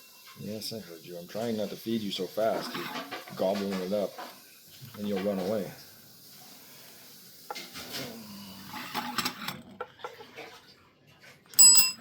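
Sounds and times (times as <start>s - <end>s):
cutlery clinking on a plate: 11.6s - 12.0s.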